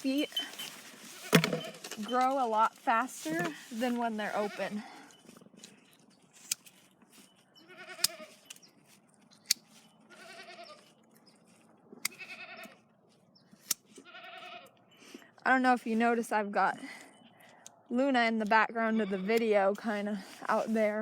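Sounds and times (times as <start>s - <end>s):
hoof trimmers snipping: 0.0s - 4.8s, 6.3s - 8.7s, 9.3s - 9.9s, 12.0s - 12.8s, 13.5s - 14.0s
goat bleating: 4.2s - 5.0s, 7.6s - 8.4s, 10.1s - 10.9s, 12.0s - 12.8s, 14.0s - 14.8s.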